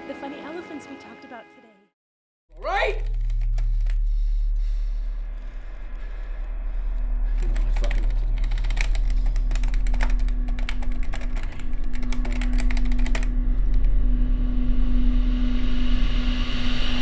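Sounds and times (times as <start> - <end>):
steady low hum: 2.9 - 17.0
rapid sharp clicks: 7.0 - 14.0.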